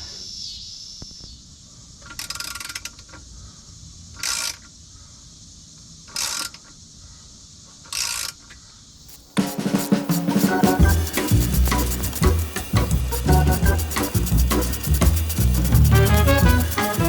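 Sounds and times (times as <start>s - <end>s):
music with drums: 9.2s - 17.0s
socket ratchet clicking: 9.8s - 17.0s.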